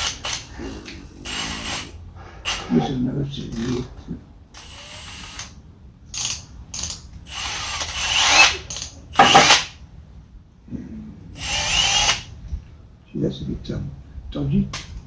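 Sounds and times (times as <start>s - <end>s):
tool ratcheting: 4.6s - 9.8s.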